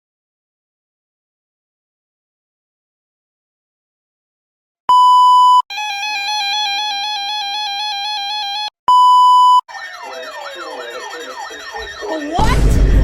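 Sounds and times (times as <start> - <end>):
sirens wailing: 9.7 - 13.0
warbling electronic tone: 9.7 - 13.0.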